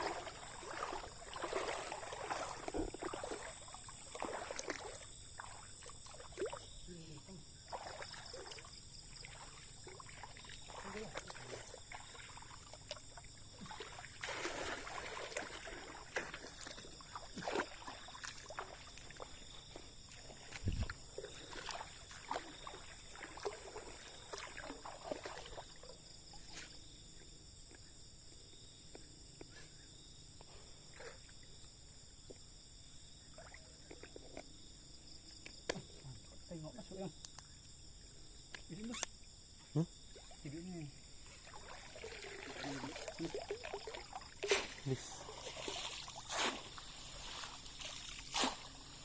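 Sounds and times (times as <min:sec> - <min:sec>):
splashes and knocks in water: 0:00.0 - 0:06.8, 0:07.6 - 0:26.8, 0:40.1 - 0:49.0
night insects chorus: 0:00.0 - 0:49.0.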